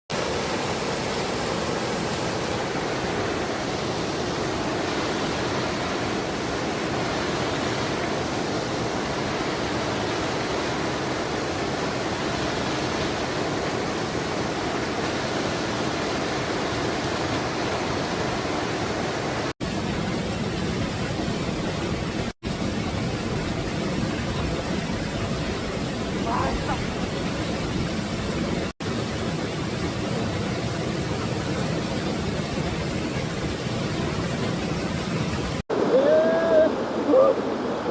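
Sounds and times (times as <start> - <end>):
mountain stream rushing: 0.1 - 37.9.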